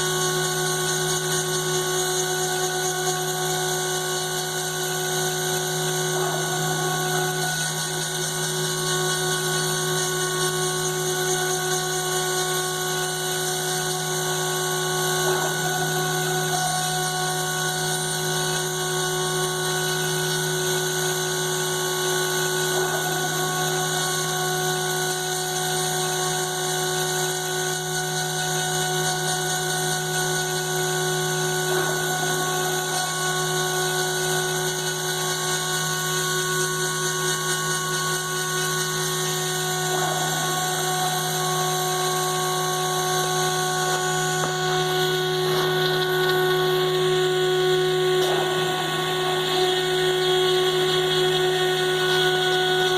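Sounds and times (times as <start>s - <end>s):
router spindle whine: 0.0s - 52.9s.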